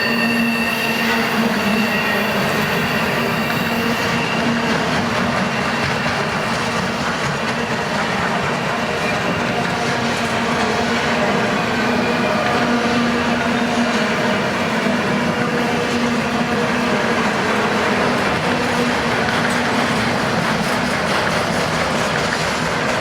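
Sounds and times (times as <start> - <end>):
faint thin wheel squeal: 0.0 - 6.4
train wheels rumbling on track: 0.0 - 23.0.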